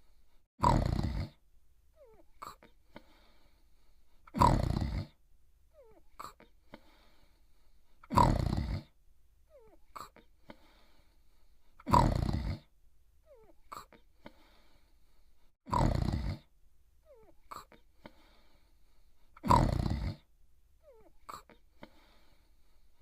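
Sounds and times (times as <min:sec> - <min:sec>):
faint breath: 0:00.0 - 0:00.5, 0:02.1 - 0:04.3, 0:06.6 - 0:08.1, 0:10.2 - 0:11.8, 0:14.0 - 0:15.6, 0:17.5 - 0:19.4, 0:20.9 - 0:23.0
cartoon dog snoring: 0:00.6 - 0:01.4, 0:04.3 - 0:05.2, 0:08.0 - 0:09.0, 0:11.8 - 0:12.7, 0:15.6 - 0:16.5, 0:19.4 - 0:20.3.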